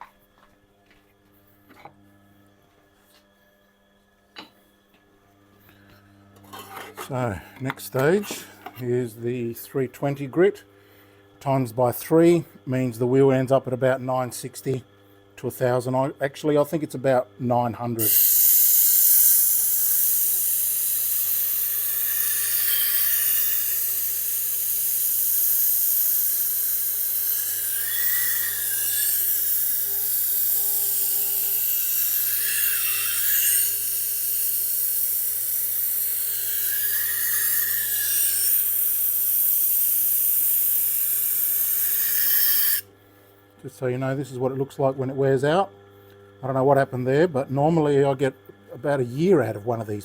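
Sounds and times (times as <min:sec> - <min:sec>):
motor hum: 0:16.9 - 0:43.7
steel grinding on stone wheel: 0:18.0 - 0:42.8.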